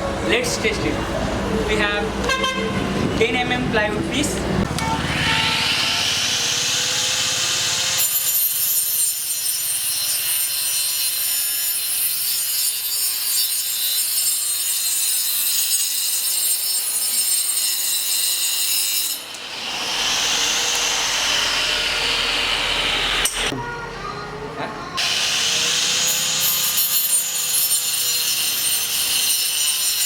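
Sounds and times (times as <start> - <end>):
electric motor whining: 4.6 - 8.0
saw blade rasping through wood: 25.0 - 30.0.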